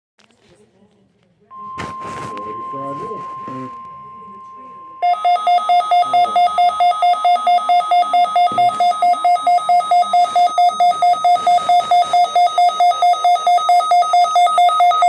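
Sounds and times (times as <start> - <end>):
electronic alarm beeping rapidly: 1.5 - 15.0.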